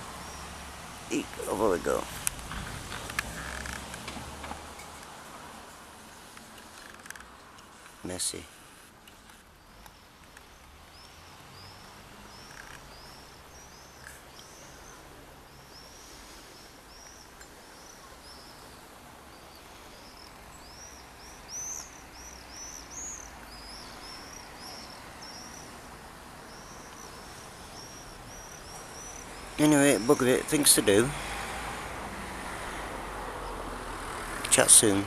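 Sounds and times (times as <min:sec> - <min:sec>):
small bird chirping: 0:09.6 - 0:25.8, 0:26.4 - 0:30.5.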